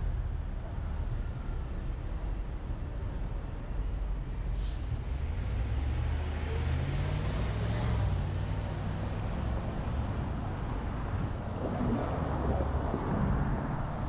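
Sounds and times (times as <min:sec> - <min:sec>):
high squeal and hiss: 0:03.8 - 0:05.2.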